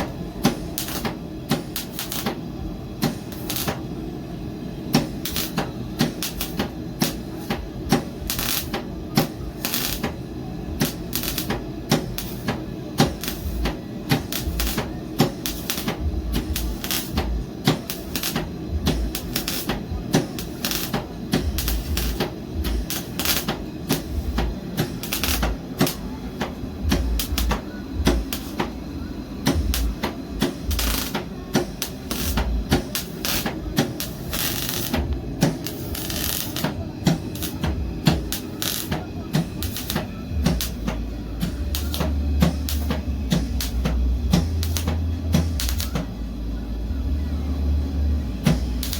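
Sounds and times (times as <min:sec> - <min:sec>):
welder arc crackling: 0:00.0 - 0:46.4, 0:48.3 - 0:48.9.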